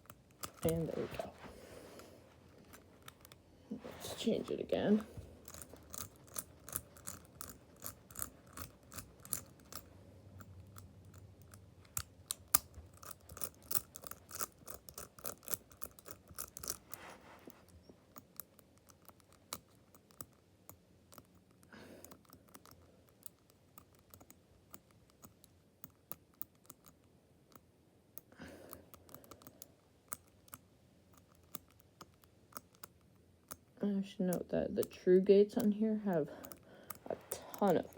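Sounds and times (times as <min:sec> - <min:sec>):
combination lock wheels clicking: 0:05.4 - 0:16.8.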